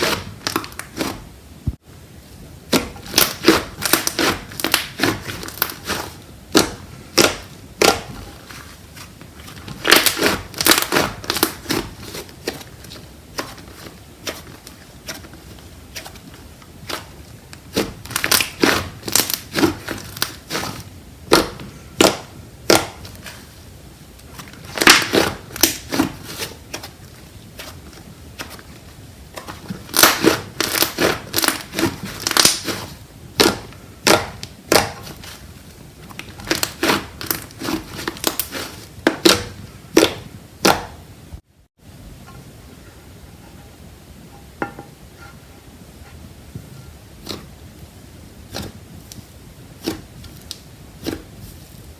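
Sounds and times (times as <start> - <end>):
hands squishing slime: 2.7 - 23.4, 24.3 - 28.7, 29.4 - 35.4, 36.1 - 41.0.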